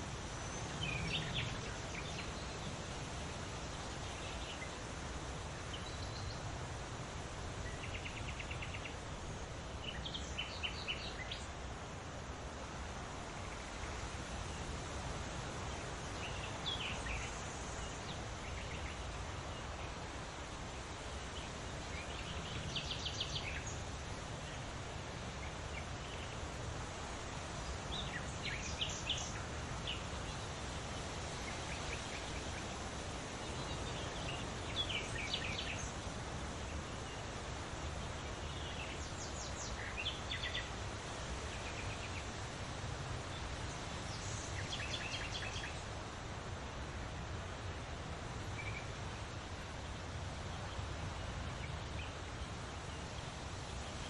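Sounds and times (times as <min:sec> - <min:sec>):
songbird singing: 0:00.0 - 0:54.0.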